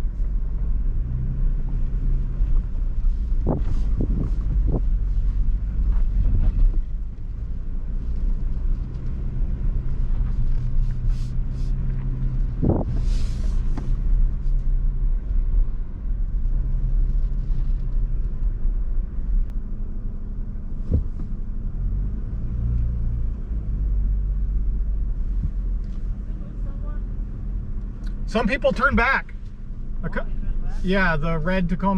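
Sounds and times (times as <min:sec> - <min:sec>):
truck engine low drone: 0:00.0 - 0:31.9.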